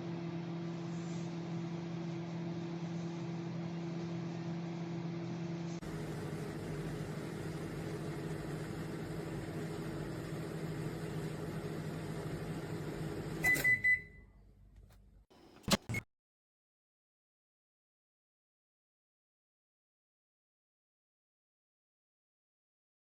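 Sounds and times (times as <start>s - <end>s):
microwave oven humming: 0.0s - 16.0s.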